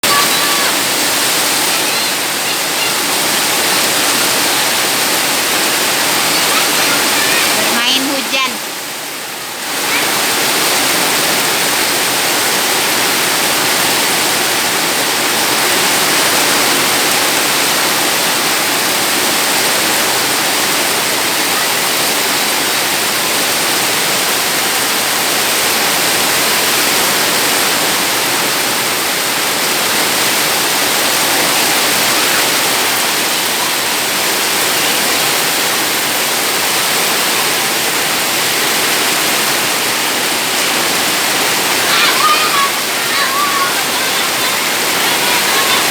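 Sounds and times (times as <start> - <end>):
heavy rain pouring: 0.0 - 45.9.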